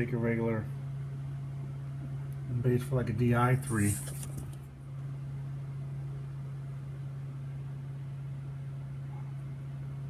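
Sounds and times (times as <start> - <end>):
steady low hum: 0.0 - 10.0
faint hiss: 3.6 - 4.4.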